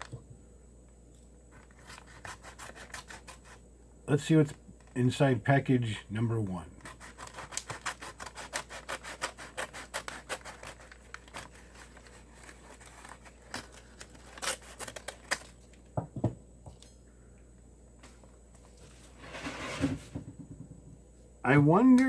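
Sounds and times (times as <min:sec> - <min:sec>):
package being scraped open: 0:01.6 - 0:03.6, 0:06.8 - 0:15.8.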